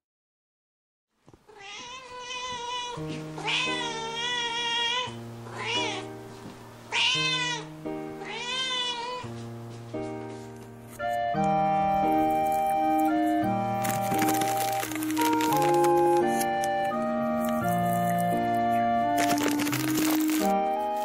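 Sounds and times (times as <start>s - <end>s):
cat meowing: 1.5s - 6.2s, 6.9s - 9.3s
soft background music: 1.6s - 21.0s.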